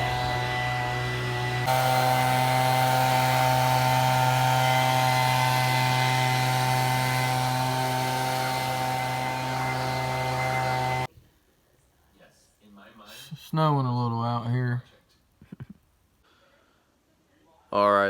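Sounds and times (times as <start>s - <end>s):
engine running with hum: 0.0s - 11.1s.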